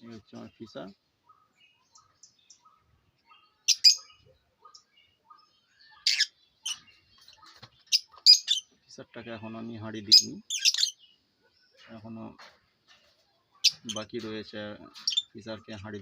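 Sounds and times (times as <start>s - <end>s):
soft bird twitters: 0.0s - 16.0s
parrots chirping: 1.3s - 8.7s, 10.1s - 11.7s, 13.6s - 14.0s, 14.9s - 15.4s.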